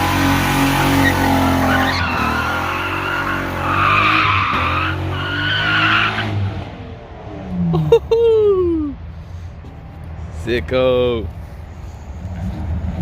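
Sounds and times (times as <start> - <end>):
car engine revving hard: 0.0 - 6.8.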